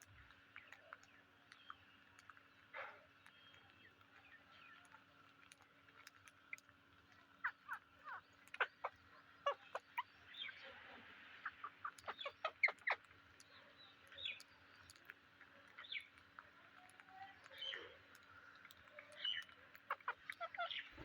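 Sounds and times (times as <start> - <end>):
parrots chirping and squawking: 7.4 - 10.6, 11.4 - 13.1, 19.1 - 21.0.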